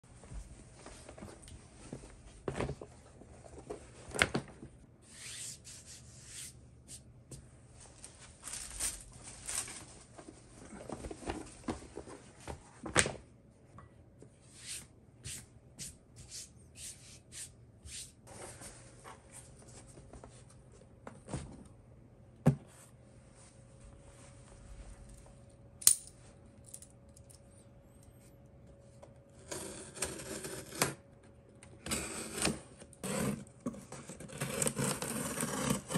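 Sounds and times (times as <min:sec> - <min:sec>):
packaging rustling and tearing: 0:08.3 - 0:11.6.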